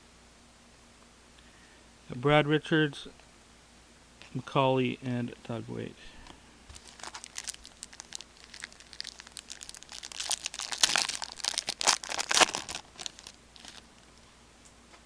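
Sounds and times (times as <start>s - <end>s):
foil wrapper crinkling and tearing: 6.7s - 14.1s.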